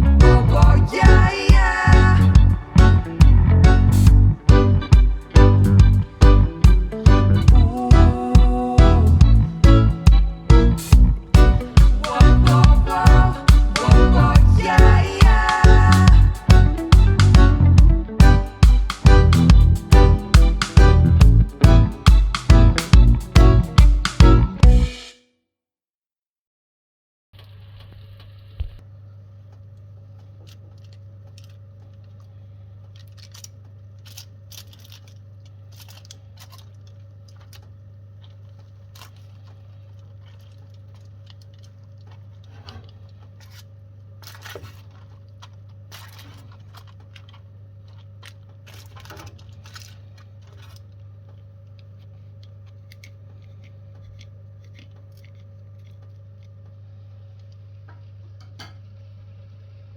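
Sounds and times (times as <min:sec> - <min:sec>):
low hum: 0:00.0 - 0:25.0
food crunching and scraping: 0:30.2 - 0:57.6.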